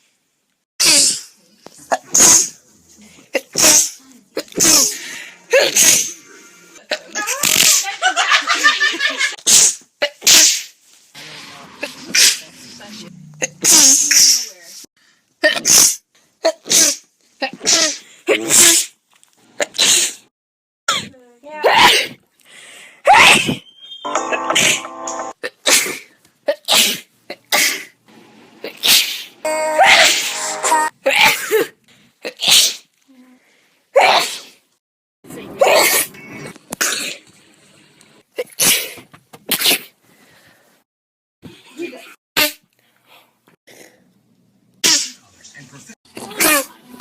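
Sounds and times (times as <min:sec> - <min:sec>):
woman sneezing: 0:00.8 - 0:01.3, 0:03.4 - 0:06.2, 0:15.4 - 0:19.0, 0:20.9 - 0:22.2, 0:23.0 - 0:23.6, 0:29.8 - 0:30.3, 0:34.0 - 0:34.5.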